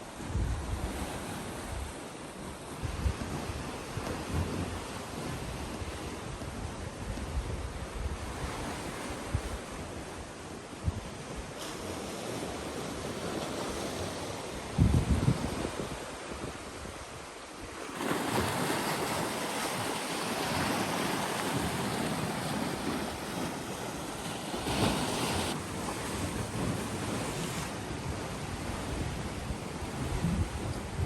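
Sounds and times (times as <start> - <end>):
wind buffeting microphone: 0.2 - 2.0, 2.8 - 31.0
sea waves washing: 8.3 - 31.0.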